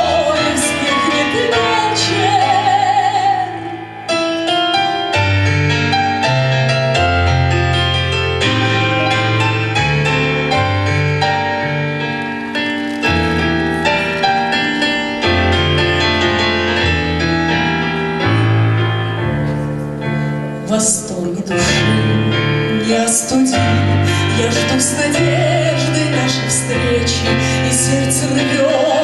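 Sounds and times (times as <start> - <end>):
grand piano playing chords: 0.0 - 29.0.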